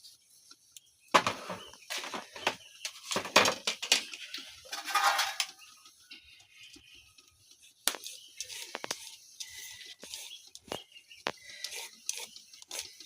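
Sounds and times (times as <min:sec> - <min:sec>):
cooking utensils and pots clattering: 0:01.2 - 0:05.7
rough scraping: 0:04.1 - 0:05.6.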